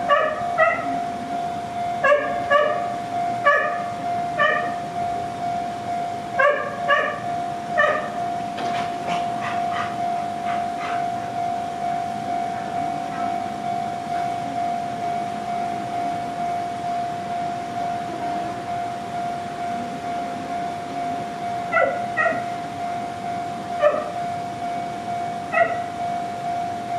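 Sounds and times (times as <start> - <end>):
level crossing alarm ringing: 0.0 - 26.9
dog yipping and barking: 0.1 - 0.9, 2.0 - 2.9, 3.5 - 3.8, 4.4 - 4.7, 6.4 - 7.2, 7.8 - 8.1, 9.1 - 11.1, 21.7 - 22.5, 23.8 - 24.1, 25.5 - 25.8.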